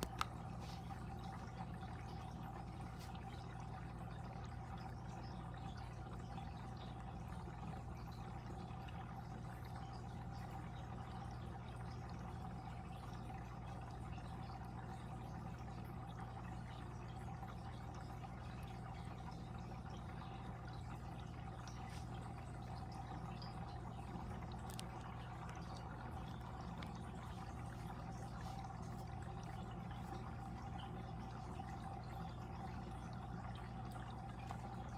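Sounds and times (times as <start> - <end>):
low steady hum: 0.0 - 34.9
water trickling in aquarium: 0.0 - 34.9.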